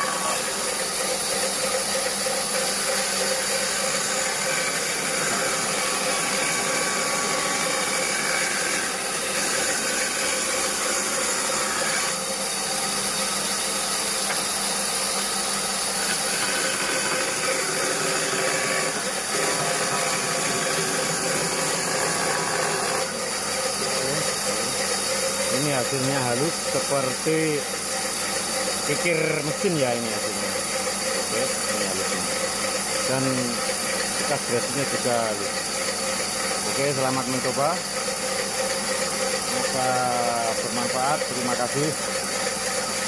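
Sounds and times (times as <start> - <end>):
band saw cutting wood: 0.0 - 43.0.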